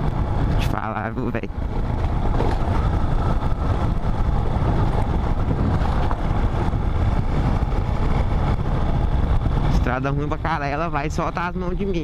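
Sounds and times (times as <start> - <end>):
wind noise on microphone: 0.0 - 12.0
motorcycle engine running: 1.5 - 12.0.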